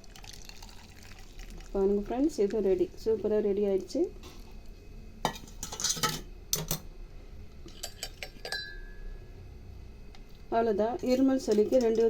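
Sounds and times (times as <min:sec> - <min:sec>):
kitchen utensils clinking: 0:05.3 - 0:06.9, 0:07.7 - 0:09.0, 0:11.0 - 0:12.0.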